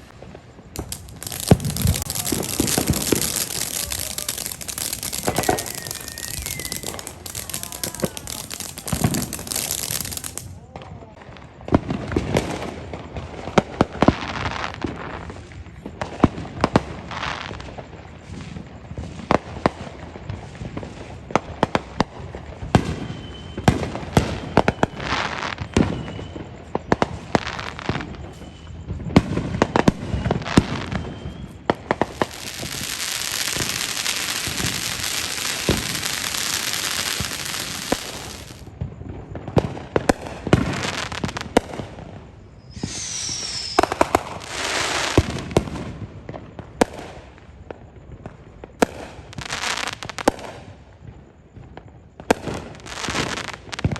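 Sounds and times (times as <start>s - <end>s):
firework hissing spray: 0.0s - 10.5s, 32.0s - 38.7s, 42.7s - 45.6s
firework falling whistle: 0.0s - 10.6s, 22.6s - 46.9s
firecrackers crackling pops: 0.0s - 53.9s.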